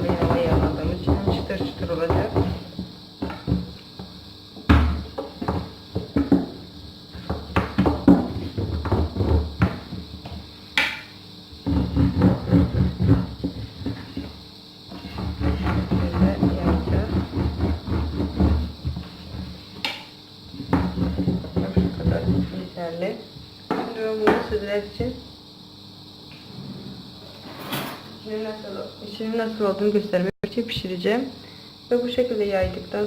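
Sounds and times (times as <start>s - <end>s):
rolling pin rolling dough: 0.0s - 4.1s, 4.8s - 10.4s, 11.6s - 19.9s, 20.5s - 22.9s
knocks on board: 4.7s - 6.5s.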